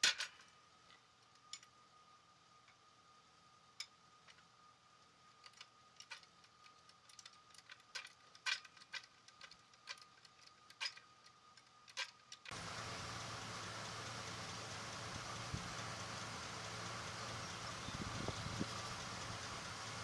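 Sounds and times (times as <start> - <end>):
steady running noise with low hum: 12.5 - 20.0.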